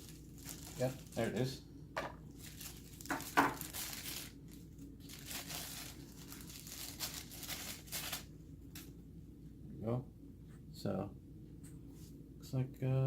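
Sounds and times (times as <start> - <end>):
packaging crinkling and tearing: 0.0 - 1.5, 2.3 - 8.9.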